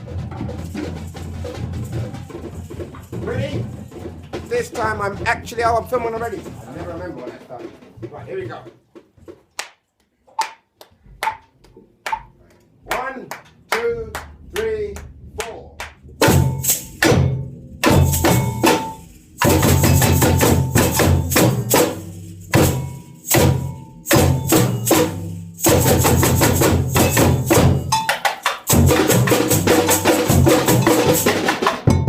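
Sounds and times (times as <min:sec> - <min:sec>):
samba drum ensemble playing: 0:00.0 - 0:09.2, 0:16.0 - 0:32.0.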